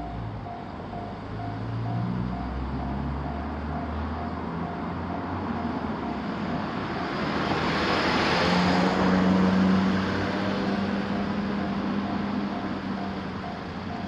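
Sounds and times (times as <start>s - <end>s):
level crossing alarm bell: 0.0s - 7.3s, 10.7s - 14.0s
train passing: 0.0s - 14.0s.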